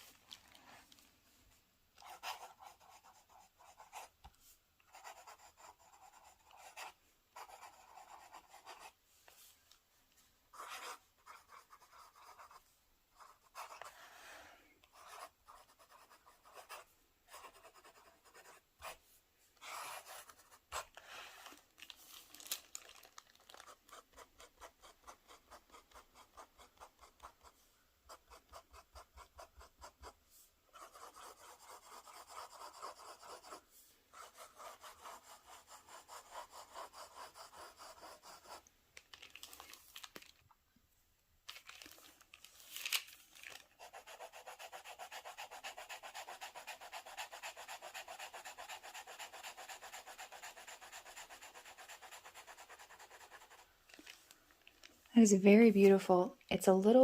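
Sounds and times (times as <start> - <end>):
fountain pen scratching on paper: 2.0 - 4.1, 4.9 - 9.0, 10.5 - 12.6, 13.2 - 14.0, 14.9 - 19.0, 19.6 - 21.0, 23.5 - 38.6, 43.8 - 53.6.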